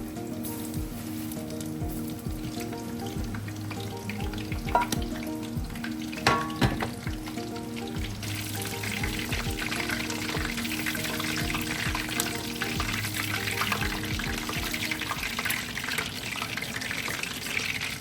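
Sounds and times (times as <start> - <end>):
food sizzling in a pan: 0.0 - 18.0
utensil clinking against pan: 4.7 - 5.2, 6.2 - 7.1.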